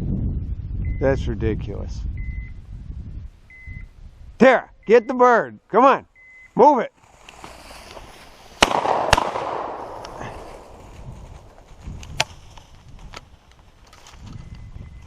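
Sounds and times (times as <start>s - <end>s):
sharp cracks: 7.3s - 12.5s
dog crashing through brush: 7.4s - 11.9s.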